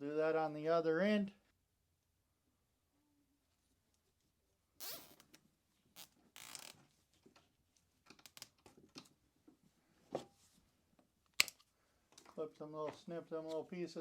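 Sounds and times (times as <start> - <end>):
zip tie ratcheting: 4.8 - 5.4, 6.0 - 6.8.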